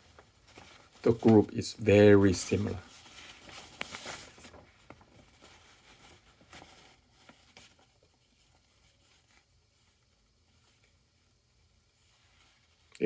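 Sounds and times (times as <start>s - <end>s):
paper rustling and clicks: 0.0s - 1.6s, 2.3s - 8.2s.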